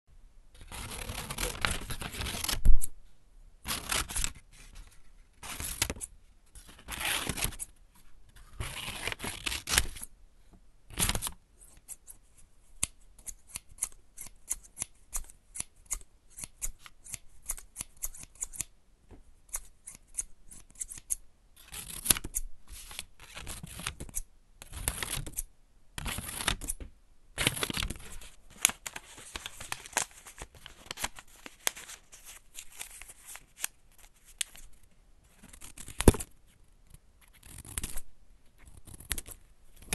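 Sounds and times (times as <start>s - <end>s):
scissors cutting paper: 12.8s - 18.7s, 19.5s - 22.4s, 37.2s - 38.0s.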